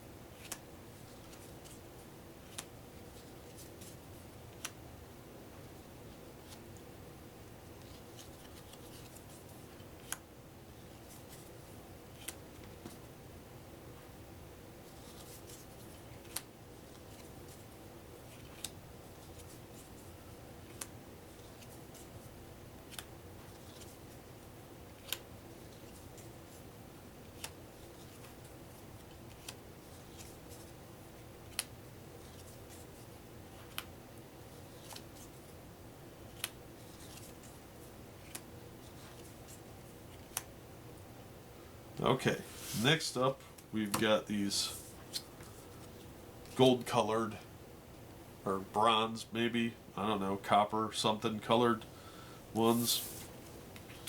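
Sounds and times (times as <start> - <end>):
playing cards rustling: 7.8 - 10.2, 34.5 - 35.5, 36.3 - 40.5, 42.1 - 47.1, 52.6 - 54.0.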